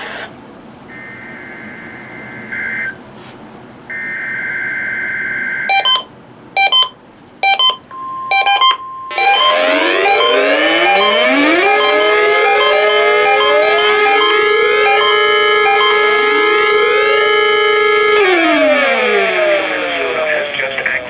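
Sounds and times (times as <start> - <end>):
siren-like alarm: 0.9 - 3.0, 3.9 - 6.1, 7.5 - 21.0
short beeps: 3.9 - 11.2
steady alert tone: 7.9 - 15.1.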